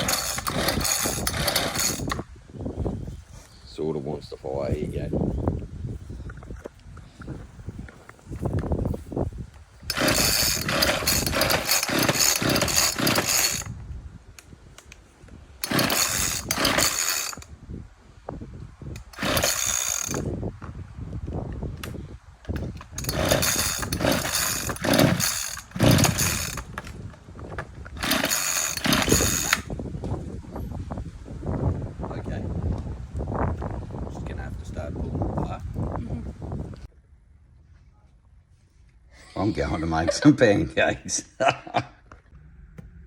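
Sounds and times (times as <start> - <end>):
chainsaw starting and dying: 0.0 - 2.3, 9.9 - 13.8, 15.6 - 17.5, 19.0 - 20.3, 22.8 - 27.0, 28.0 - 29.8.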